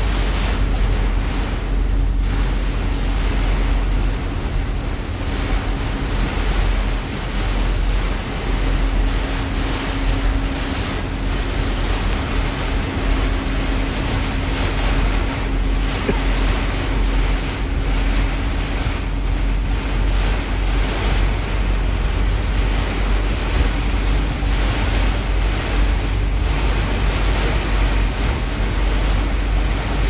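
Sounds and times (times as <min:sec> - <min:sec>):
wind buffeting microphone: 0:00.0 - 0:30.0
heavy rain pouring: 0:08.5 - 0:20.2.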